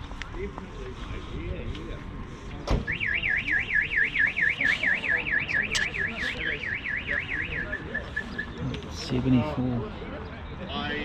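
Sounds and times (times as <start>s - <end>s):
car alarm siren warbling: 2.9s - 8.6s.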